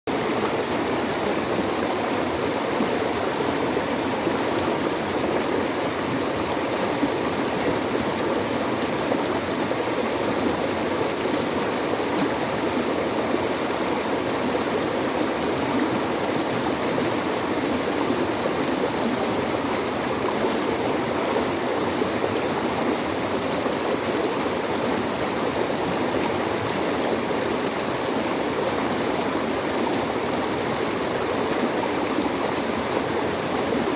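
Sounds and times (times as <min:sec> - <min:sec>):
running water: 0:00.1 - 0:33.9.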